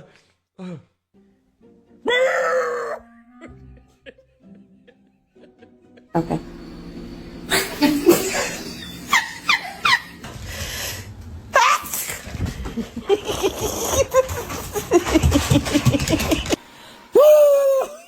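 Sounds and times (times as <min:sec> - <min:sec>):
person laughing: 0:03.4 - 0:10.4, 0:11.8 - 0:16.6, 0:17.2 - 0:18.0
dog howling: 0:07.6 - 0:10.2.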